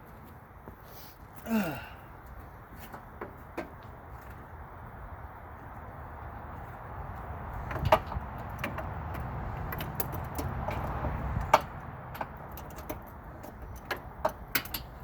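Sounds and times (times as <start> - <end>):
hand tools clanking on metal: 7.8 - 15.0.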